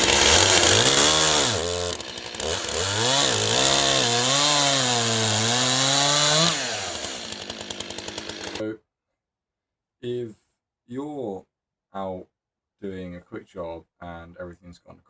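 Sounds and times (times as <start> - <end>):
chainsaw running at high revs: 0.0 - 8.6.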